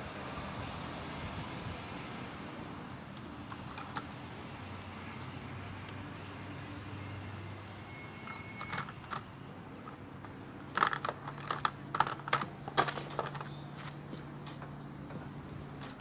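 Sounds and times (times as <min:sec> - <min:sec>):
hand tools clicking and knocking: 0:03.5 - 0:04.2, 0:08.1 - 0:16.0.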